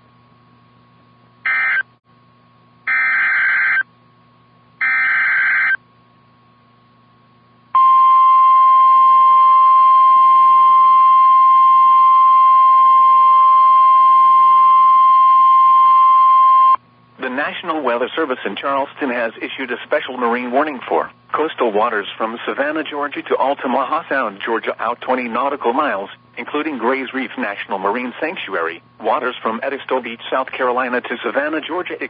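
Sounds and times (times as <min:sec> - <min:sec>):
steady warning alarm tone: 0:01.4 - 0:01.9, 0:02.9 - 0:03.8, 0:04.8 - 0:05.8
screechy digital data bursts: 0:01.5 - 0:01.8, 0:02.9 - 0:03.8, 0:04.8 - 0:05.8.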